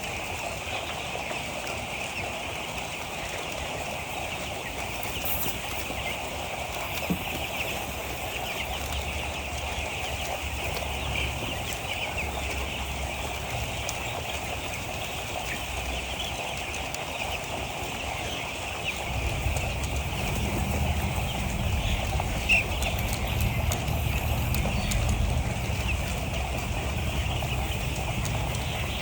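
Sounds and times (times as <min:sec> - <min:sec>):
chicks peeping: 0:00.0 - 0:29.0
low steady hum: 0:19.0 - 0:29.0.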